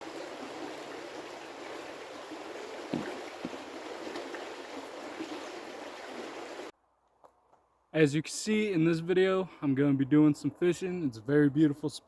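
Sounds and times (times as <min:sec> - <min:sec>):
creek water rushing: 0:00.0 - 0:06.7.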